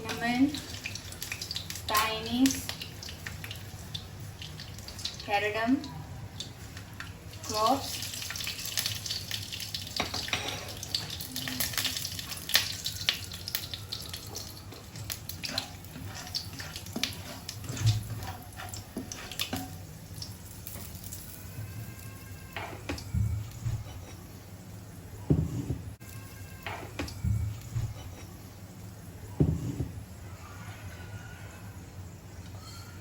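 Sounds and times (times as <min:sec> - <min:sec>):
spices sizzling in hot oil: 0:00.0 - 0:23.8.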